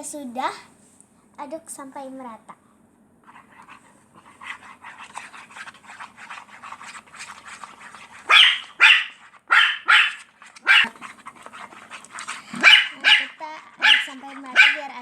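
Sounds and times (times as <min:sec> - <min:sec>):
dog barking: 0:08.3 - 0:11.0, 0:12.6 - 0:14.8.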